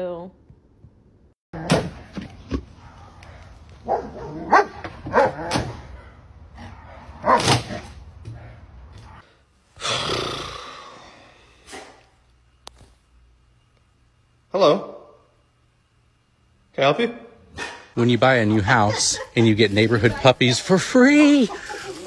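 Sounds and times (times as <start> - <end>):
dog barking: 2.8 - 5.8, 6.6 - 7.9, 17.6 - 17.9.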